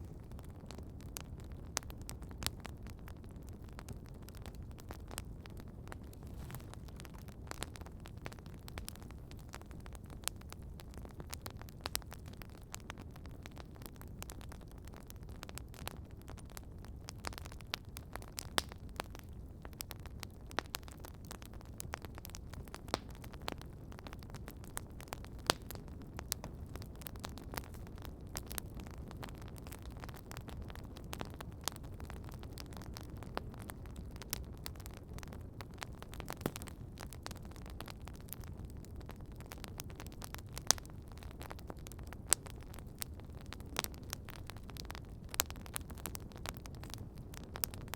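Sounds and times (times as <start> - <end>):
low rush of flame: 0.0 - 13.3
campfire crackling and popping: 0.0 - 47.9.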